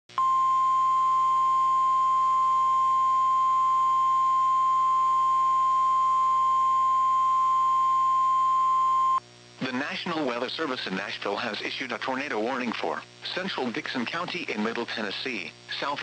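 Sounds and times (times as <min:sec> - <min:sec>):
steady warning alarm tone: 0:00.2 - 0:09.2.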